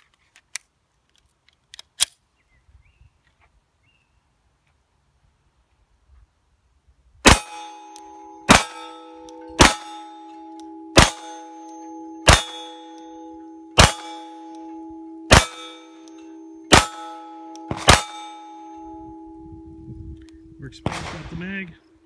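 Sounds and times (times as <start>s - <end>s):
pistol shots: 7.3s - 10.2s, 11.0s - 13.0s, 13.8s - 18.9s, 20.8s - 21.7s
long metallic ringing: 7.3s - 22.0s.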